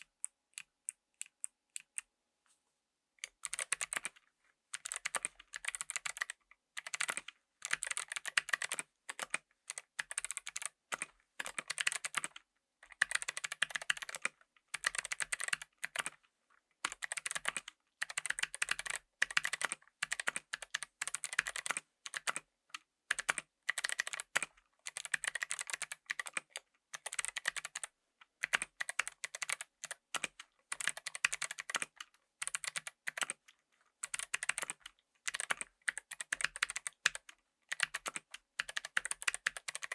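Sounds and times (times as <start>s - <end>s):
clicky mechanical keyboard typing: 3.2s - 16.2s, 16.8s - 22.4s, 23.1s - 39.9s.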